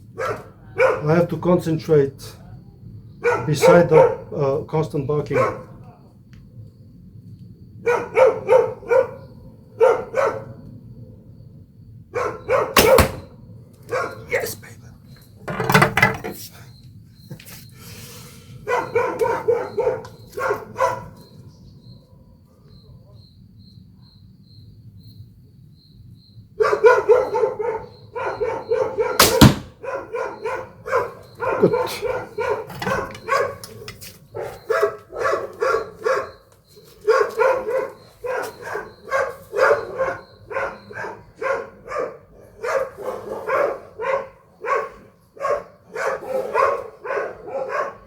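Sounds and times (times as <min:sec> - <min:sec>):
dog barking: 0:00.1 - 0:01.3, 0:03.2 - 0:04.4, 0:05.3 - 0:05.8, 0:07.8 - 0:10.6, 0:12.1 - 0:14.5, 0:18.6 - 0:21.4, 0:26.6 - 0:48.0
loud sharp crack: 0:12.8 - 0:13.3, 0:29.2 - 0:29.8.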